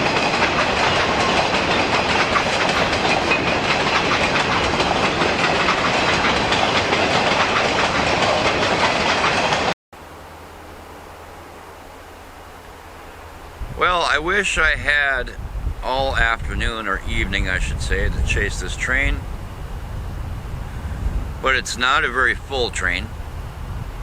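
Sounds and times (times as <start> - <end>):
wheels clacking over rail joints: 0.0 - 9.8, 14.4 - 19.6
freight train cars rolling past: 0.0 - 24.0
low hum: 10.0 - 16.6.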